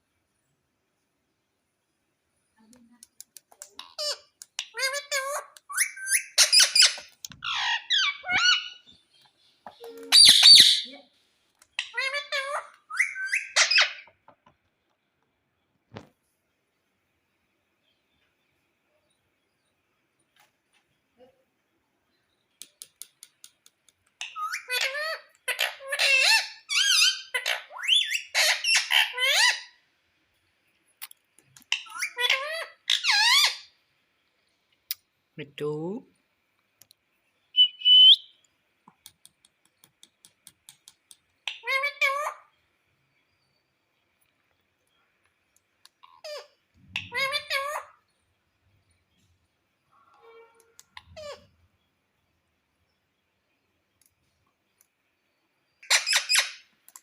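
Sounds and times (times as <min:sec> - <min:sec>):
parakeet chattering calls: 0:03.8 - 0:08.9, 0:10.1 - 0:10.9, 0:11.8 - 0:14.1, 0:55.8 - 0:56.6
parakeet squeaky calls: 0:03.8 - 0:09.0, 0:10.0 - 0:10.9, 0:11.8 - 0:14.1, 0:24.2 - 0:29.8, 0:31.7 - 0:33.7, 0:37.6 - 0:38.4, 0:41.4 - 0:42.5, 0:46.0 - 0:48.0, 0:51.0 - 0:51.5, 0:55.8 - 0:56.6
parakeet harsh squawk: 0:10.1 - 0:10.9, 0:11.8 - 0:14.1.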